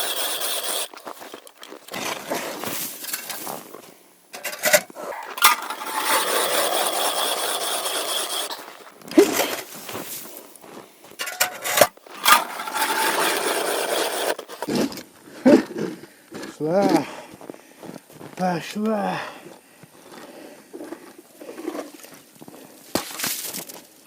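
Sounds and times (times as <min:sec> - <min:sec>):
ice auger grinding: 0:00.0 - 0:03.5, 0:04.4 - 0:10.4, 0:11.2 - 0:14.8.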